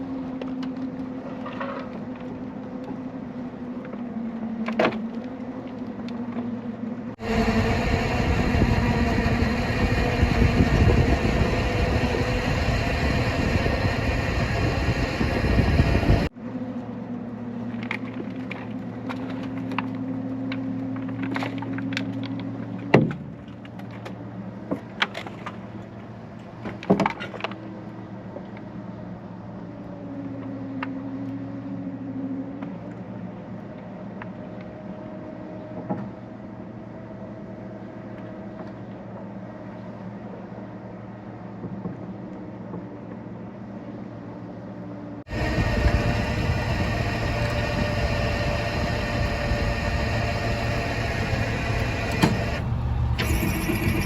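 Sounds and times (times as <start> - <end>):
truck engine running: 7.2 - 16.3, 45.3 - 54.0.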